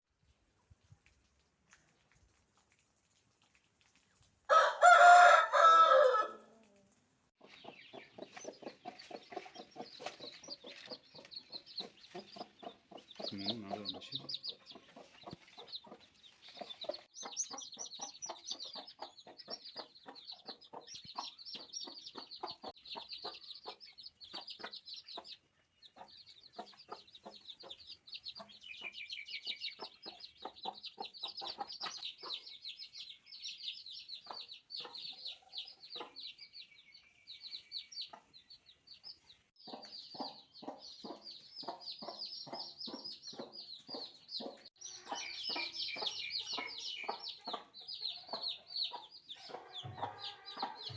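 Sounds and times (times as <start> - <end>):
chicks peeping: 7.4 - 50.9.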